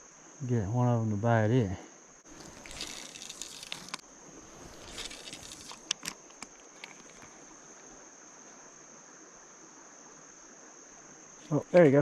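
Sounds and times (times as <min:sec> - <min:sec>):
insects droning: 0:00.0 - 0:12.0
rustling: 0:02.3 - 0:07.9
fishing reel clicks: 0:02.4 - 0:04.0, 0:04.8 - 0:07.3.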